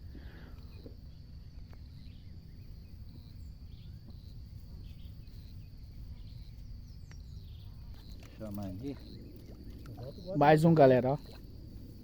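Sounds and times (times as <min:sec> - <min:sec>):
low rumble of wind: 0:00.0 - 0:12.0.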